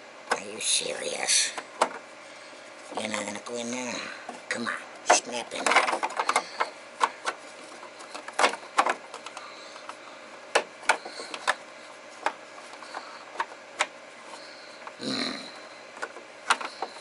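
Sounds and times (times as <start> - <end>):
plastic parts clicking and knocking: 1.8 - 2.0, 5.1 - 11.6, 12.2 - 13.9, 16.0 - 17.0.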